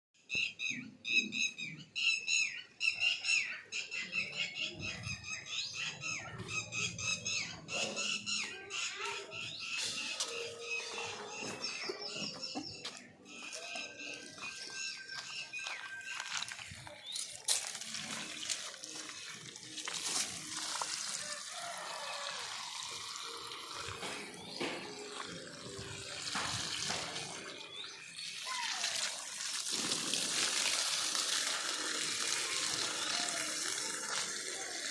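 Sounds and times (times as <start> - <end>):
birds calling harsh notes: 0.2 - 20.0, 21.2 - 29.6
water pouring and splashing: 7.5 - 34.9.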